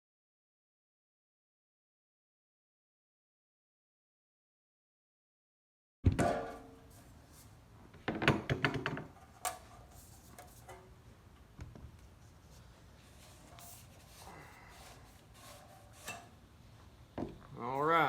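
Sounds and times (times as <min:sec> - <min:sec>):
metal clank: 0:06.1 - 0:07.0
rattle of knocks: 0:08.0 - 0:09.2.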